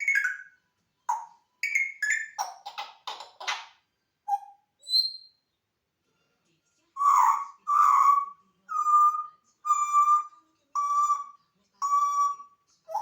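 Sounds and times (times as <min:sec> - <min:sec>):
parrot whistled calls: 0:00.0 - 0:00.5, 0:01.1 - 0:03.0, 0:04.3 - 0:05.4, 0:07.0 - 0:13.0.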